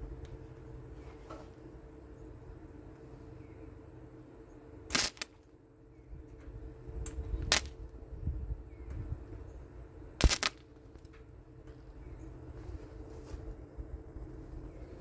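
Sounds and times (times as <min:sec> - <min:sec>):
welder arc crackling: 0:04.9 - 0:05.4, 0:10.2 - 0:10.6.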